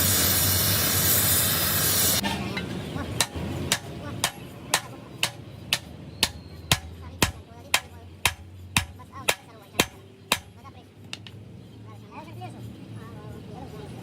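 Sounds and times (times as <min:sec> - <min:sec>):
hammer striking metal: 0:02.5 - 0:10.6.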